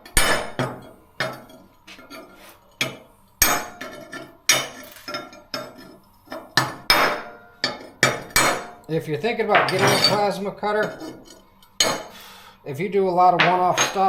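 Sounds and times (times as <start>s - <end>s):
hammer striking chisel on steel: 2.8s - 4.9s, 11.8s - 12.2s.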